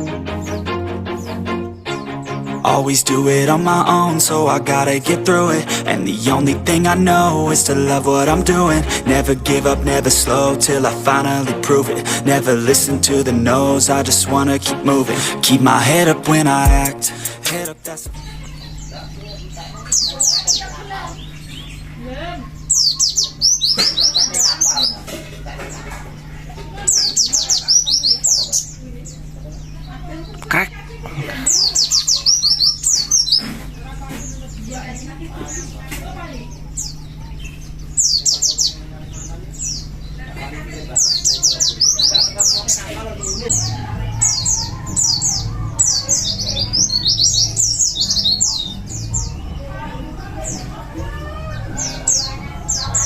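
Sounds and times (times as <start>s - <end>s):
birds singing high falling notes: 0.0s - 24.9s, 41.0s - 53.0s.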